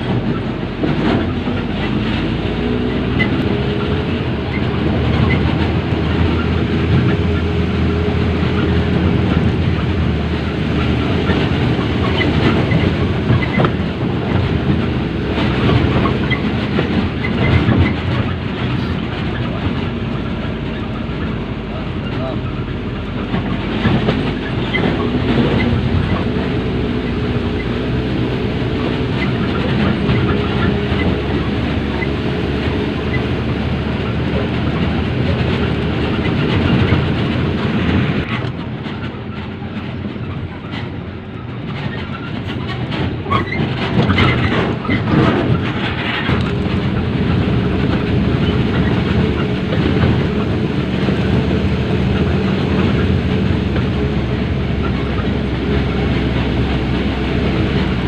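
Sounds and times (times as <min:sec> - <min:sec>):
heavy vehicle engine running: 0:00.0 - 0:58.0
rattling clattering noise: 0:00.0 - 0:58.0.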